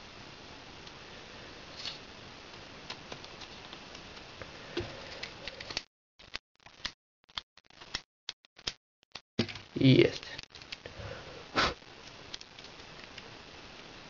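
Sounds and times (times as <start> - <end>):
faint steady hiss: 9.4 - 14.0.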